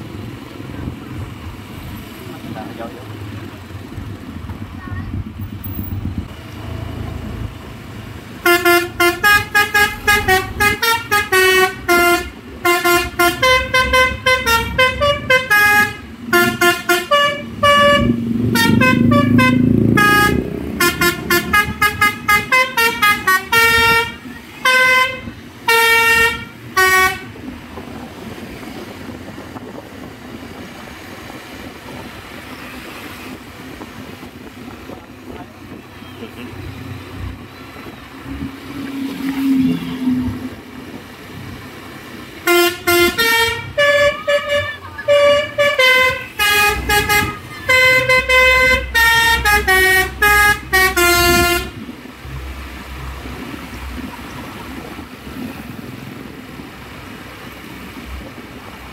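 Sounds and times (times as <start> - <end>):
musical truck horn tune: 8.4 - 27.4, 42.4 - 51.9.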